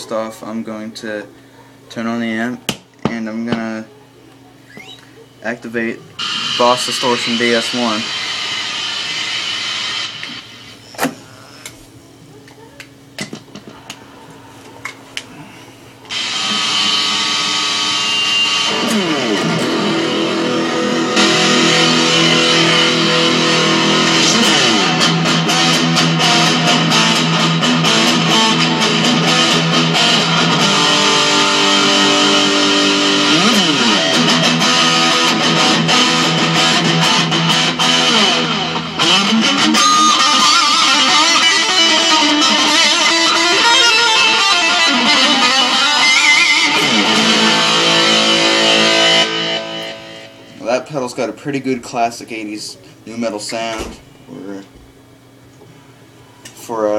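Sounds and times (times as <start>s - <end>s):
amp hum: 0.0s - 56.9s
distorted electric guitar riffs: 4.5s - 11.7s, 15.4s - 50.8s.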